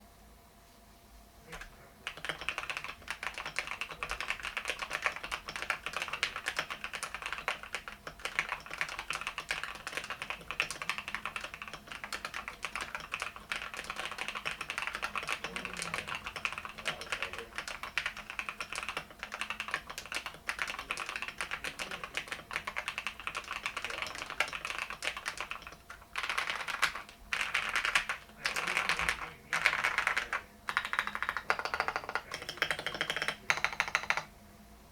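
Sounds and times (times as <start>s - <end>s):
mechanical keyboard typing: 1.5s - 34.3s.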